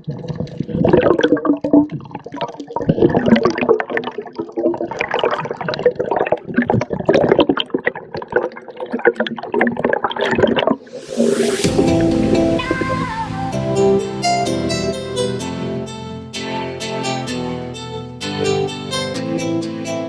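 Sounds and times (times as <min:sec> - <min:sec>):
water splashing and bubbling: 0:00.0 - 0:13.1.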